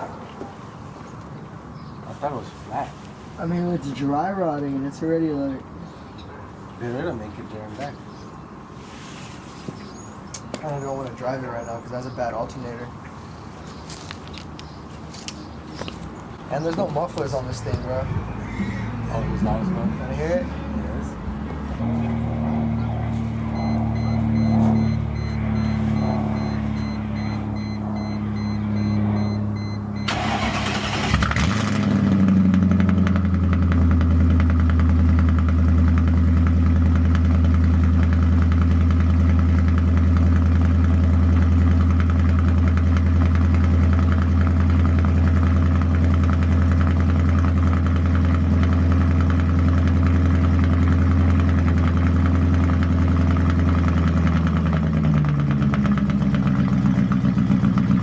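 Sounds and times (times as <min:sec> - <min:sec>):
car engine starting and idling: 0:15.4 - 0:58.0.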